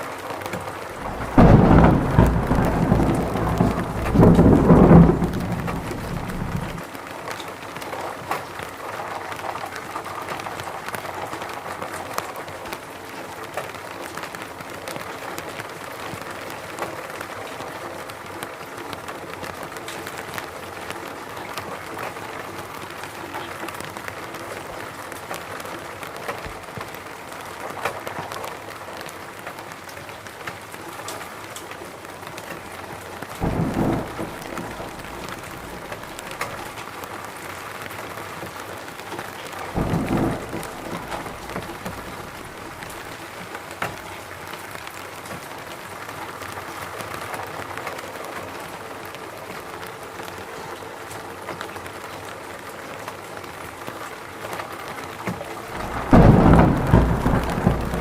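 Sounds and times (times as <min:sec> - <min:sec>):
steady rain falling: 0:00.0 - 0:58.0
loud low rumble: 0:01.0 - 0:06.8, 0:33.4 - 0:36.6, 0:39.8 - 0:43.0, 0:55.7 - 0:58.0.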